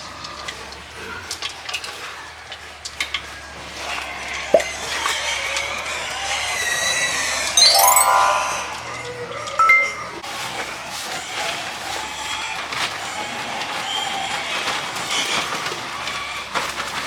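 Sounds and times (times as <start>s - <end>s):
music with chime-like notes: 7.6s - 9.0s, 9.6s - 10.2s.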